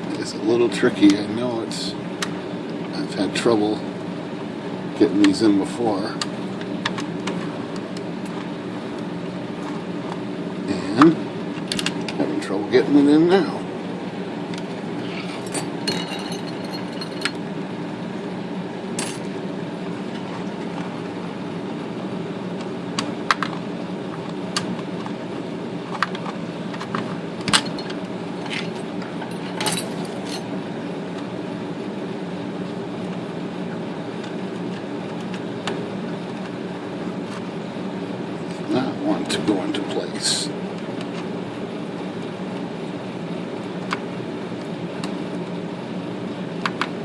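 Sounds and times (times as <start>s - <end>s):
steady low hum: 0.0s - 47.0s.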